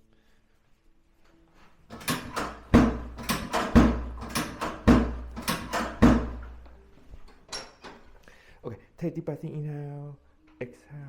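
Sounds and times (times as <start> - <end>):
sharp knocks: 1.9 - 6.6.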